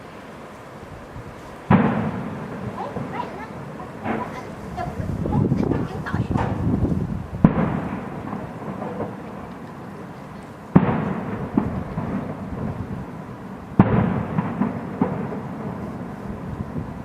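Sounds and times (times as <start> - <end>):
firework shells bursting: 0.0 - 17.0
rolling rumble: 0.0 - 17.0
small firework pops: 1.3 - 4.5, 6.3 - 12.8, 13.8 - 16.5.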